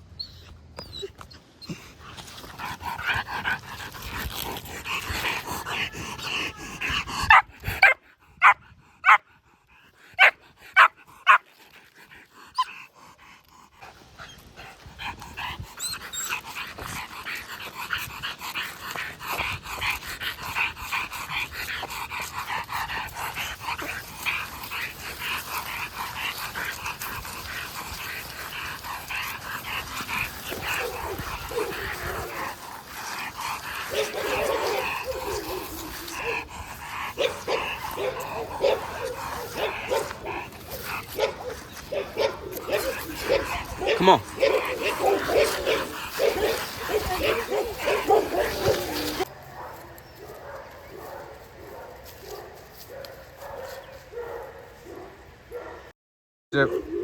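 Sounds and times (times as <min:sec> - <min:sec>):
dog whining and yipping: 0:00.1 - 0:01.8, 0:15.8 - 0:16.4.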